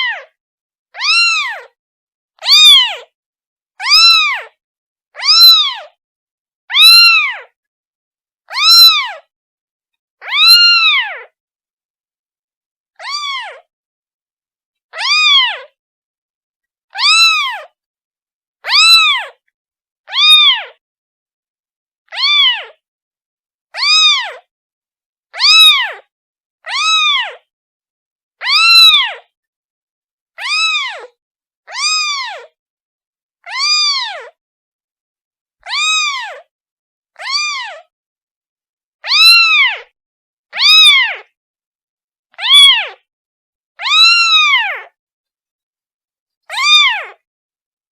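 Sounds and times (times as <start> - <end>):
kitten meowing: 1.0 - 1.8, 2.4 - 3.1, 3.8 - 4.6, 5.2 - 6.0, 6.7 - 7.6, 8.5 - 9.3, 10.2 - 11.3, 13.0 - 13.7, 15.0 - 15.8, 16.9 - 17.8, 18.6 - 19.4, 20.1 - 20.8, 22.1 - 22.8, 23.8 - 24.5, 25.4 - 27.4, 28.4 - 29.2, 30.4 - 32.6, 33.4 - 34.4, 35.6 - 36.5, 37.2 - 37.9, 39.0 - 39.9, 40.5 - 41.3, 42.4 - 43.0, 43.8 - 45.0, 46.5 - 47.2.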